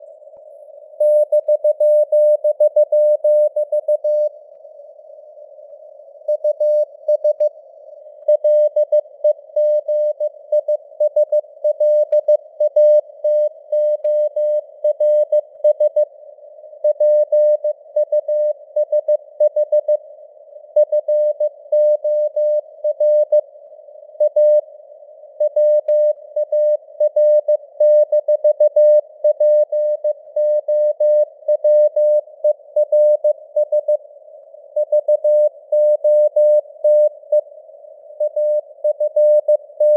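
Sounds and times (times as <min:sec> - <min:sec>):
morse code beeps: 0:38.2 - 0:39.9.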